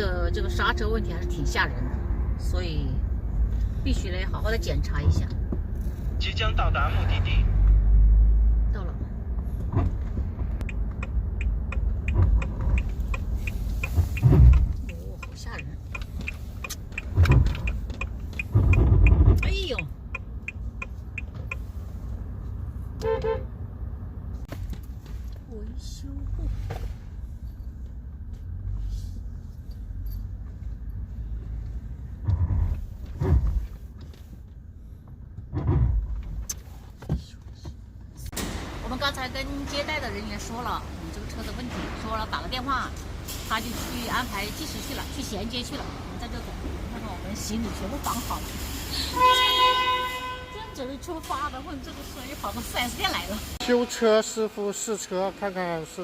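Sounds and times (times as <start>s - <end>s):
brakes grinding: 0.0s - 53.6s
low rumble of moving car: 0.0s - 56.0s
turn signal ticking: 9.2s - 23.3s.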